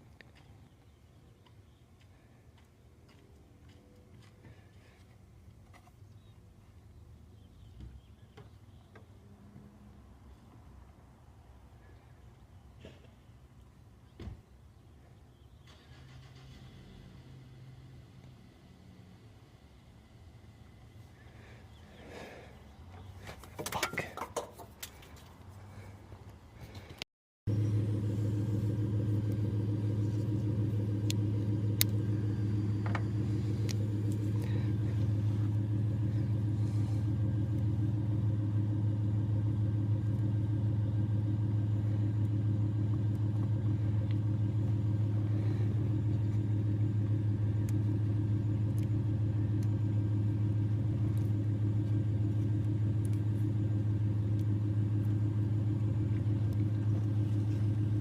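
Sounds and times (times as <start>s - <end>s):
truck engine idling: 27.5s - 58.0s.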